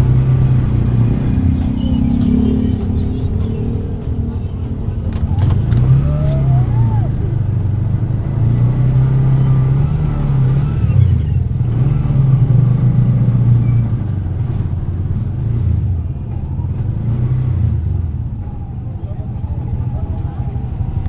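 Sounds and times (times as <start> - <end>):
vehicle engine drone: 0.0 - 21.0.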